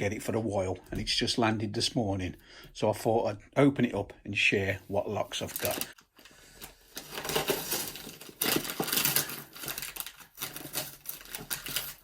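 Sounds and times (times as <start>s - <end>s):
packaging rustling and crinkling: 5.3s - 12.0s.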